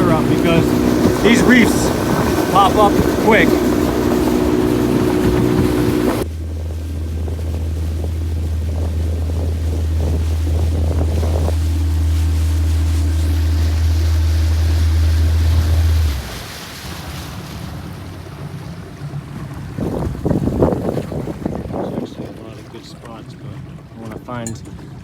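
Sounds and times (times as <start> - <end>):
heavy low drone: 0.0 - 16.4
outboard motor running: 0.0 - 25.0
wind buffeting microphone: 0.0 - 25.0.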